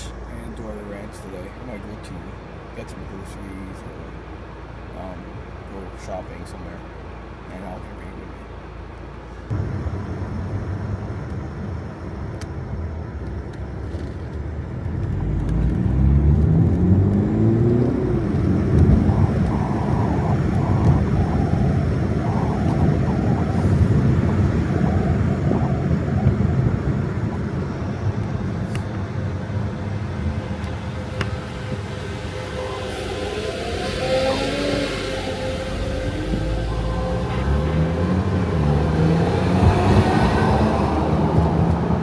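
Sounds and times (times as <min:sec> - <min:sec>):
car engine accelerating: 0:00.0 - 0:42.0
road rumble: 0:00.0 - 0:42.0.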